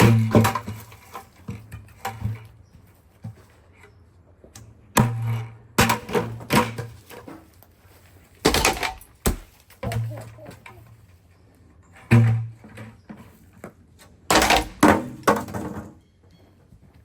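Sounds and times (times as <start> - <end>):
hard wooden knocks and clatters: 8.4 - 10.2, 14.3 - 16.0.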